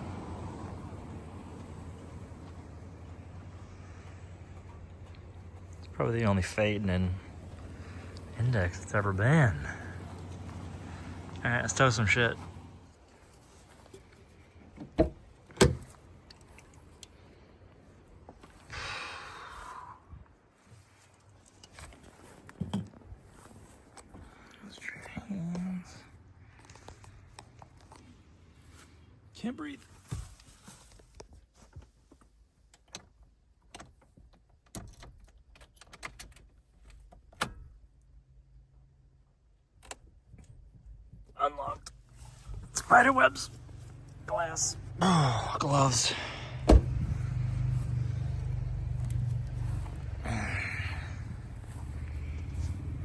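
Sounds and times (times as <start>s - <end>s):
handling clicks and knocks: 9.6s - 17.2s
vehicle door thuds: 14.8s - 16.0s, 46.6s - 47.3s.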